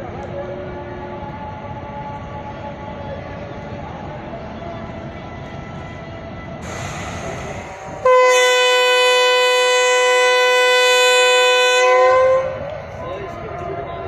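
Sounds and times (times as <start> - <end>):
train rumble: 0.0 - 14.0
locomotive horn blast: 8.0 - 12.8.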